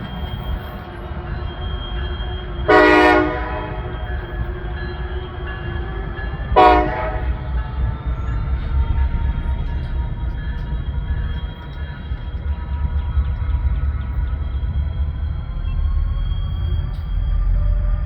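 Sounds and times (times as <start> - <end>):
low rumble of train: 0.0 - 18.0
locomotive air horn blasts: 2.7 - 4.0, 6.6 - 7.5.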